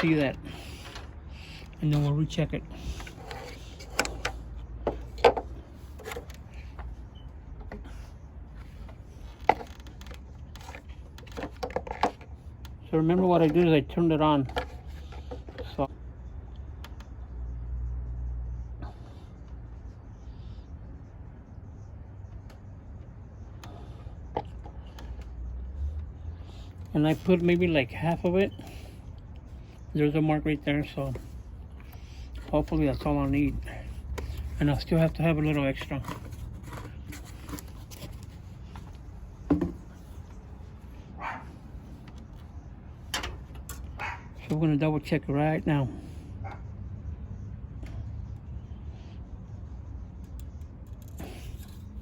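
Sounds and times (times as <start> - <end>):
dog barking: 41.2 - 41.5, 44.0 - 44.4, 46.4 - 46.7.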